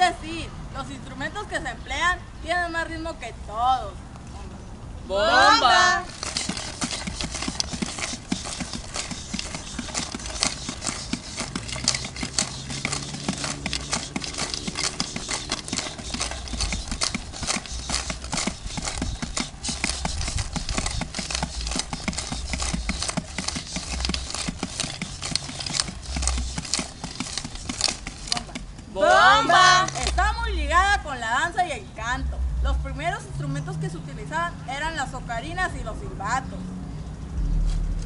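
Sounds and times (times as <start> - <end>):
rattling shaker: 5.8 - 28.8.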